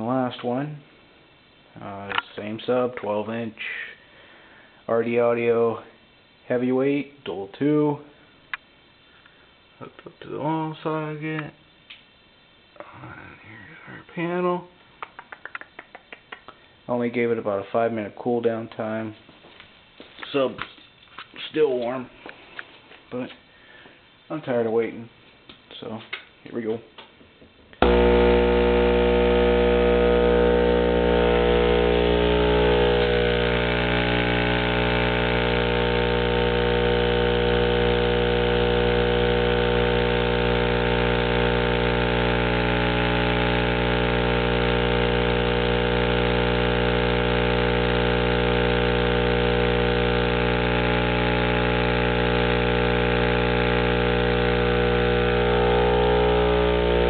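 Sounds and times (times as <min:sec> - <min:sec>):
subwoofer buzzing hum: 0:27.8 - 0:57.0.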